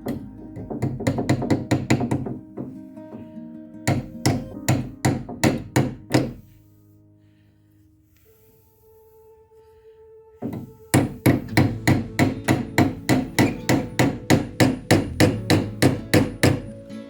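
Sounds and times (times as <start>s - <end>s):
slapped acoustic guitar beat: 11.3s - 17.0s.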